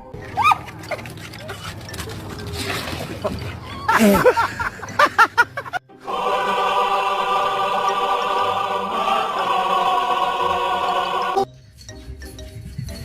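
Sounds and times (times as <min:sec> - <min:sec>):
choir singing sustained chord: 0:05.8 - 0:11.5.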